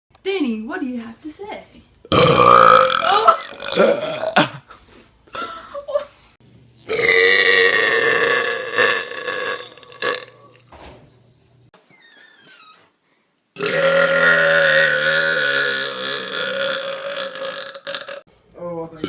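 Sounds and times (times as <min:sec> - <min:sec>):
person burping loudly: 0:02.1 - 0:04.7, 0:06.9 - 0:10.4, 0:13.6 - 0:18.2.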